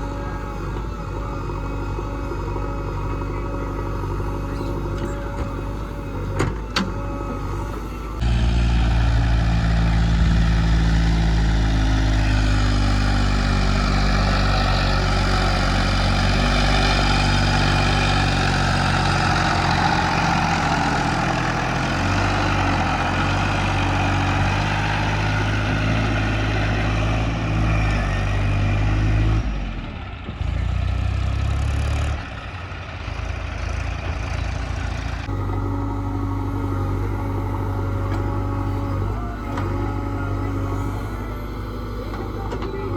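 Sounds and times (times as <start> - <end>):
heavy diesel engines running: 0.0 - 42.9
working whir: 35.3 - 42.9.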